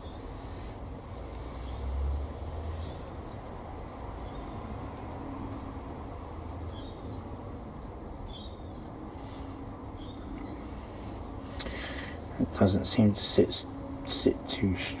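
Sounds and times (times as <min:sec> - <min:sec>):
small bird chirping: 0:00.0 - 0:00.7, 0:01.5 - 0:03.6, 0:04.2 - 0:05.7, 0:06.5 - 0:07.3, 0:08.2 - 0:09.0, 0:10.0 - 0:10.8
room noise hum and hiss: 0:00.0 - 0:15.0.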